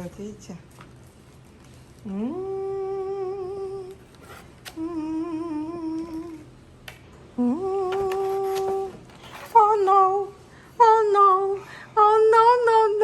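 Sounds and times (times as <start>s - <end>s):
woman humming: 2.1s - 4.0s, 4.6s - 6.5s.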